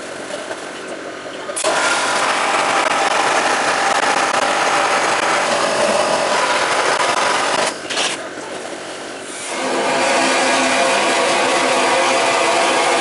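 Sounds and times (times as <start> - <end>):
wet-blasting gun hissing: 9.3 - 13.0.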